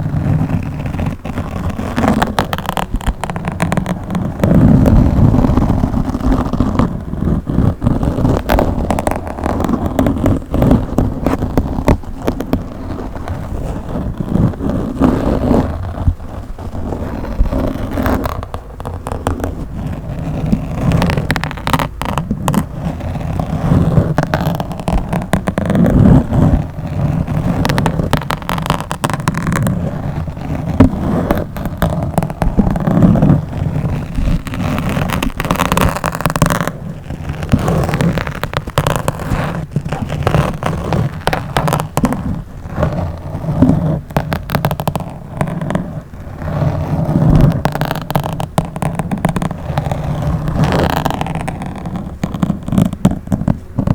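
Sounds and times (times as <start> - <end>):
crackles and pops: 0.0 - 53.9
fingers scraping on microphone: 0.0 - 53.9.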